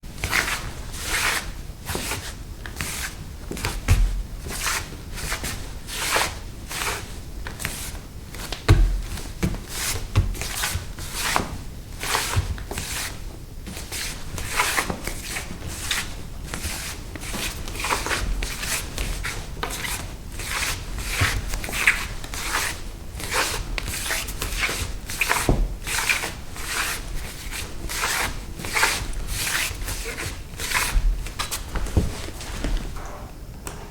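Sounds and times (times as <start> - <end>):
bare feet scuffing on wood: 16.6 - 33.1
footfall thud: 31.0 - 33.0.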